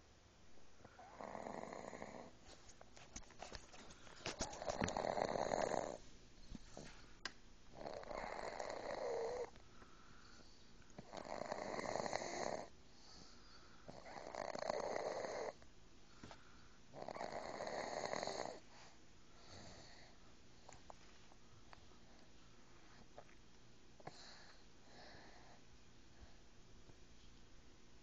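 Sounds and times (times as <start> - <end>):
baby snoring: 0.9 - 2.4, 4.4 - 6.0, 7.7 - 9.5, 11.0 - 12.7, 13.9 - 15.6, 17.0 - 18.6.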